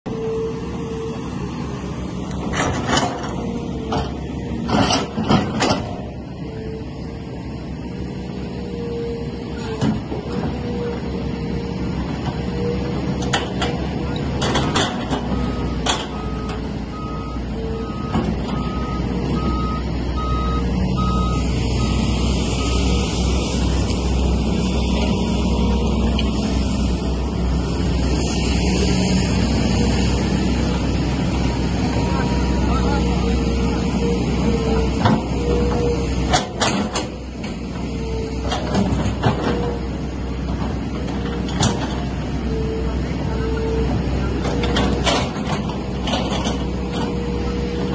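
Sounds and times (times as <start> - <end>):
excavator engine droning: 0.1 - 47.9
metallic clanks and knocks: 13.2 - 16.6
motion alarm beeping: 15.3 - 23.0.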